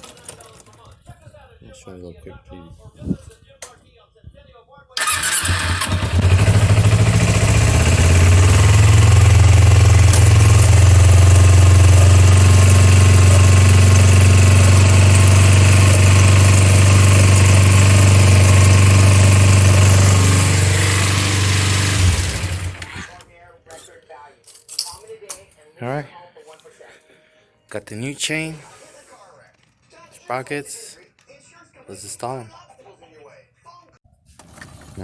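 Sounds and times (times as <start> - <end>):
motorcycle engine running: 5.0 - 23.1.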